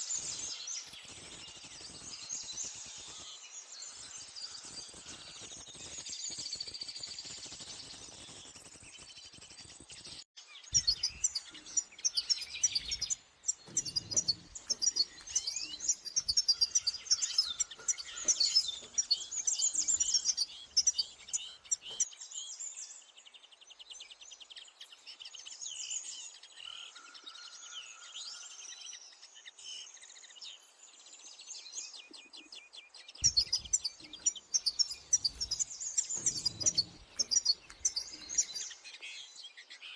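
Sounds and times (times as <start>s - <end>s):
finches chirping and twittering: 0.0s - 22.1s, 33.2s - 39.9s.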